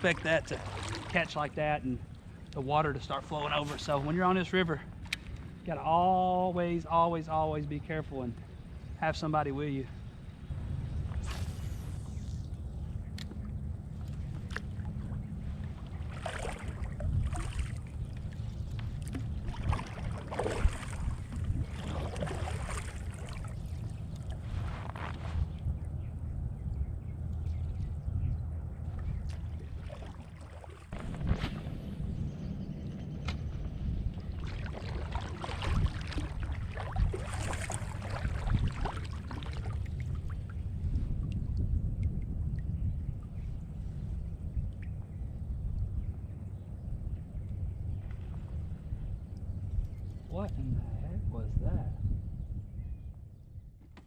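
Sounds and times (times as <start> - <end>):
water splashing around a kayak: 0.0 - 6.1, 13.4 - 25.6, 29.0 - 32.0, 34.0 - 44.1
wind rumble on microphone: 0.0 - 54.0.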